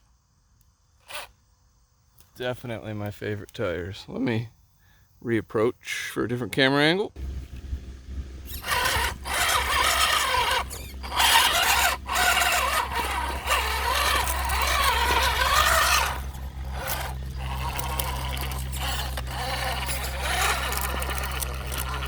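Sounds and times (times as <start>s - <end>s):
electric motor whining: 7.2s - 22.0s.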